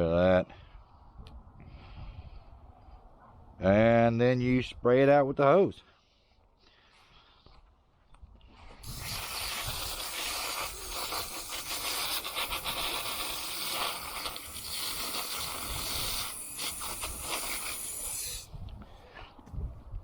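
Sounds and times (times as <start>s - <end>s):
water hose spraying: 8.8s - 18.5s.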